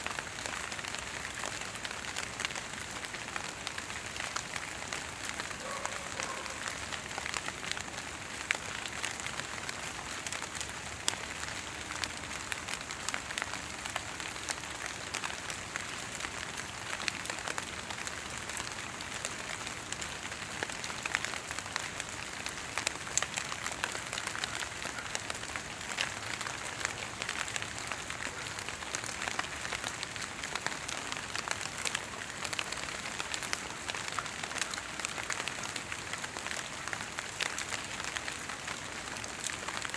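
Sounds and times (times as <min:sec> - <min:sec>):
water drops pattering on leaves: 0:00.1 - 0:39.9.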